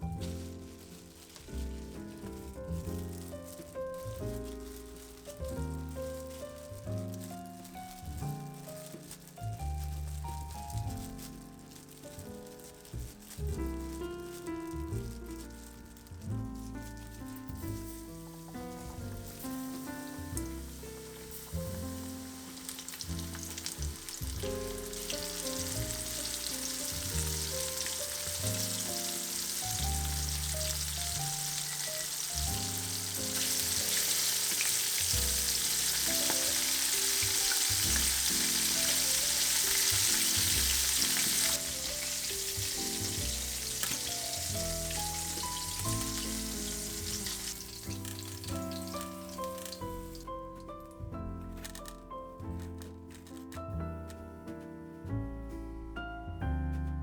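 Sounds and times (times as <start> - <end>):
oil sizzling as food fries: 0.0 - 50.4
background music: 0.0 - 57.0.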